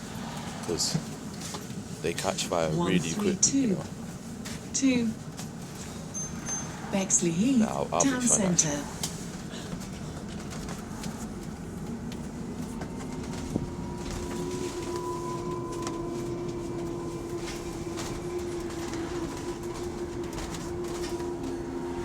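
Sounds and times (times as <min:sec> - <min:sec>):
rumble of moving bus: 0:00.0 - 0:22.0
electric drivetrain whining: 0:10.2 - 0:22.0.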